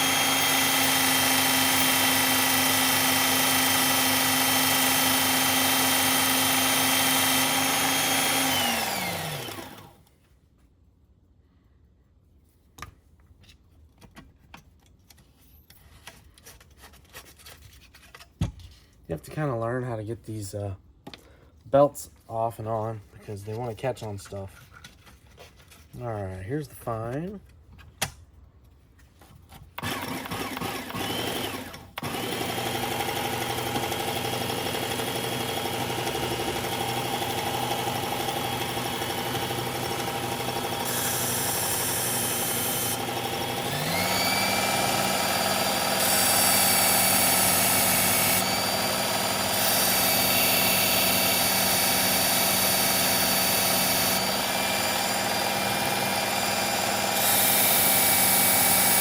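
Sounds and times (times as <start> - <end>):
belt sharpener motor running: 0.0 - 10.0, 29.8 - 59.0.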